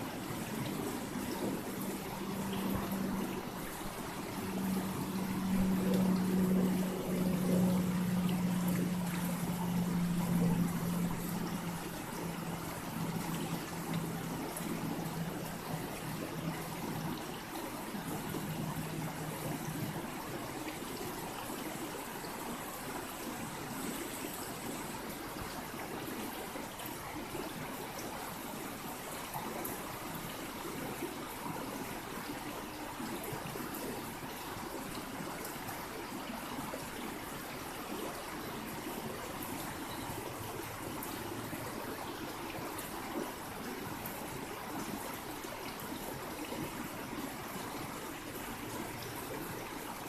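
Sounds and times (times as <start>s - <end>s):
river water flowing: 0.0s - 50.0s.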